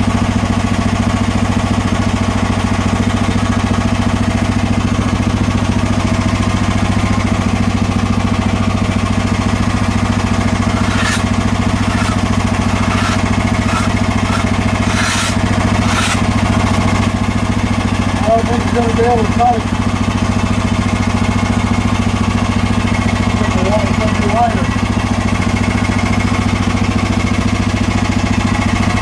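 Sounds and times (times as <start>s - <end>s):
gasoline engine running under load: 0.0s - 29.0s
band blade sawing wood: 9.5s - 17.0s.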